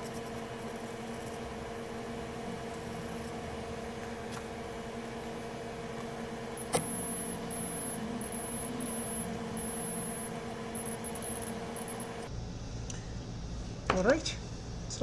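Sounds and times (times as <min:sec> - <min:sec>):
steady machine hum: 0:00.0 - 0:15.0
sharp click: 0:06.6 - 0:07.0.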